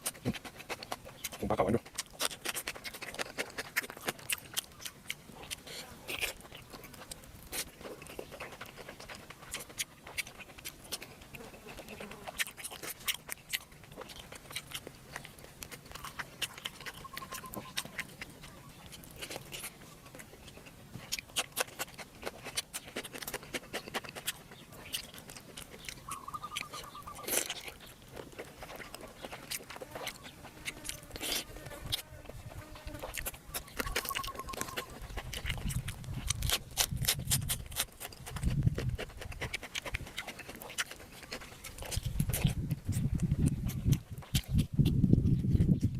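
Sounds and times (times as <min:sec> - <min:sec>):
mouth clicks and smacks: 0:00.0 - 0:32.0, 0:32.9 - 0:45.9
chewing and crunching food: 0:00.0 - 0:45.9
faint high tones: 0:33.8 - 0:35.0.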